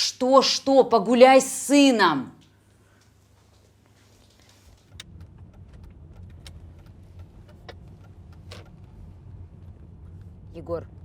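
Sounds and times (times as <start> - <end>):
car rumble from inside cabin: 4.9 - 11.0.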